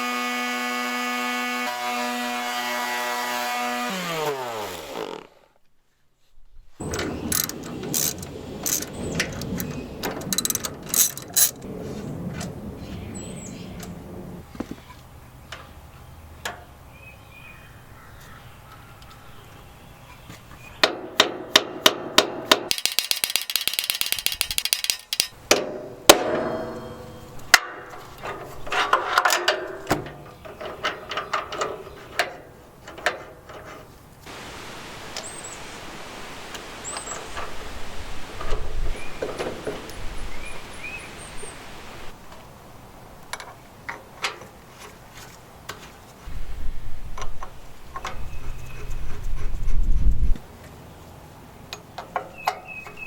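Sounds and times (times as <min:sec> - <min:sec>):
metal knocks and clinks: 0:06.8 - 0:11.6, 0:22.7 - 0:25.4
ratchet wrench clicking: 0:07.3 - 0:08.9, 0:10.4 - 0:11.6, 0:22.7 - 0:25.4.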